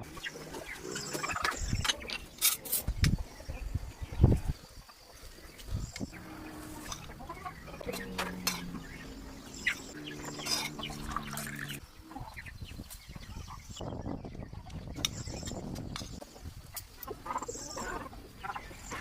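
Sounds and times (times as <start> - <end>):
farm animal calling: 5.6 - 12.4.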